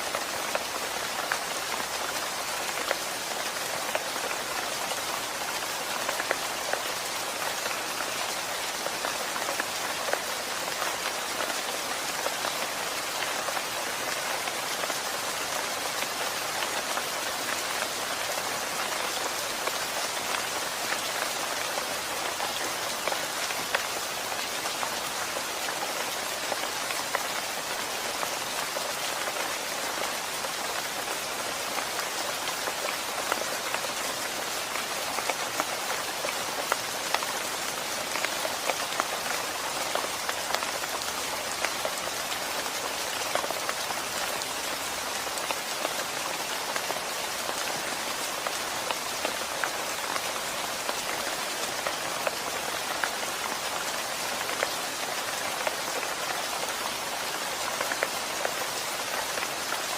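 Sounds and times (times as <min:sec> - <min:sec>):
raindrops ticking on a surface: 0:00.0 - 0:59.9
steady rain falling: 0:00.0 - 0:59.9.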